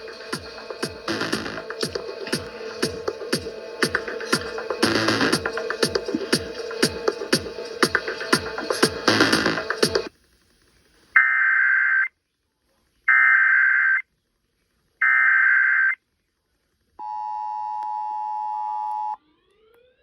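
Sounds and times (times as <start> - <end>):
music: 0.0 - 10.1.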